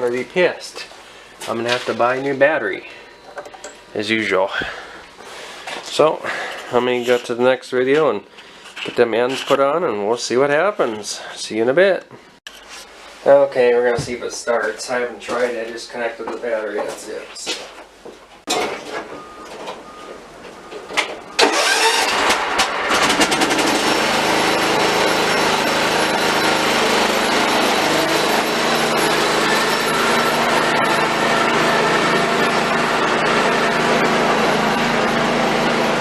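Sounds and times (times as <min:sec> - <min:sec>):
electric starter cranking: 0:21.4 - 0:36.0
small engine running: 0:21.4 - 0:36.0.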